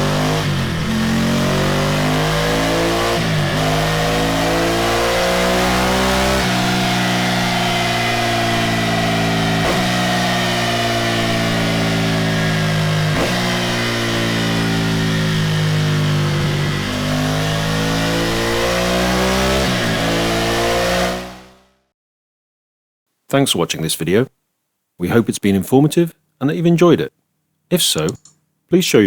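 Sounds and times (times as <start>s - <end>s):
motorcycle engine running hard: 0.0s - 21.4s.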